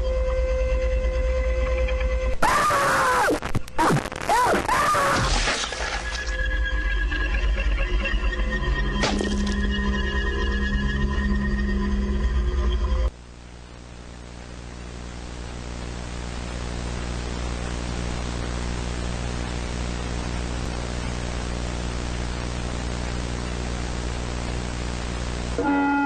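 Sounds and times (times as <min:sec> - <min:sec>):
static hiss: 0:02.4 - 0:06.4, 0:13.1 - 0:25.9.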